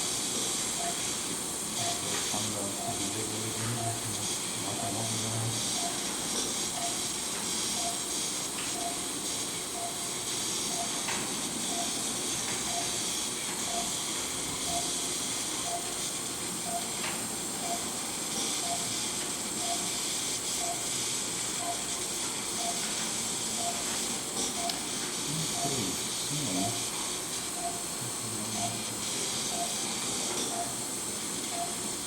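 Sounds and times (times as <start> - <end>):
patient monitor beeping: 0.7 - 1.1, 1.8 - 9.1, 9.7 - 16.0, 16.6 - 17.0, 17.6 - 18.0, 18.6 - 19.0, 19.6 - 21.0, 21.6 - 22.0, 22.6 - 26.9, 27.6 - 30.8, 31.5 - 31.9.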